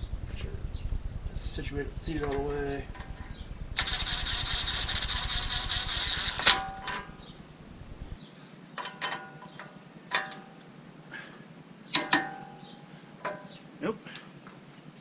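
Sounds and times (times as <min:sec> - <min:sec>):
rapid metal rattle: 0:00.0 - 0:08.2
sharp metallic clang: 0:06.2 - 0:07.5, 0:08.8 - 0:10.7, 0:11.9 - 0:13.7
light metal clinks: 0:06.6 - 0:07.5, 0:08.8 - 0:10.6, 0:12.0 - 0:13.6.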